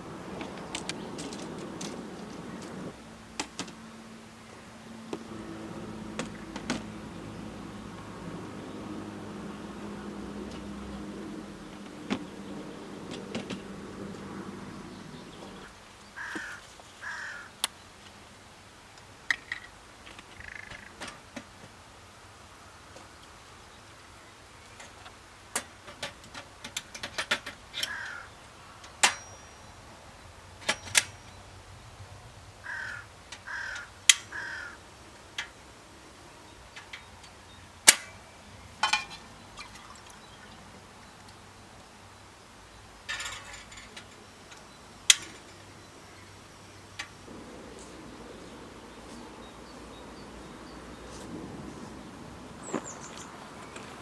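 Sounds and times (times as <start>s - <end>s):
crow cawing: 14.2s - 17.6s, 27.8s - 28.4s, 32.6s - 34.8s.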